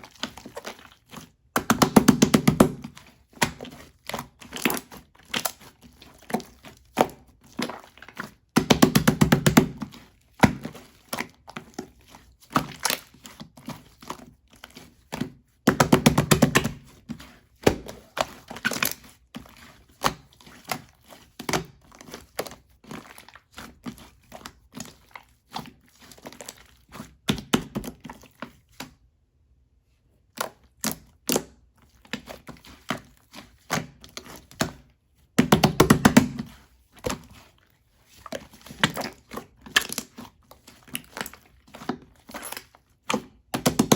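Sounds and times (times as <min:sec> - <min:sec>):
slime squished by hand: 0:00.0 - 0:29.0, 0:30.2 - 0:43.9.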